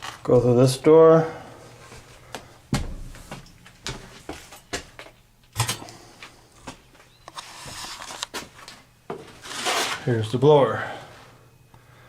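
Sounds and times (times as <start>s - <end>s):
rustling scrape: 7.4s - 8.2s, 9.2s - 10.2s.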